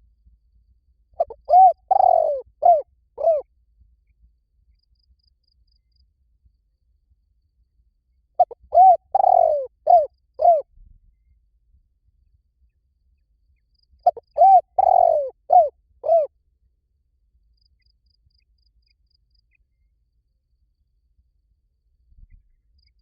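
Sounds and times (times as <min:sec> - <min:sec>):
dove cooing: 0:01.2 - 0:03.4, 0:08.4 - 0:10.6, 0:14.0 - 0:16.3.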